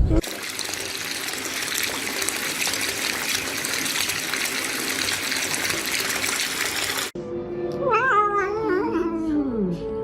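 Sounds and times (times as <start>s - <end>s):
water running: 0.2s - 7.2s.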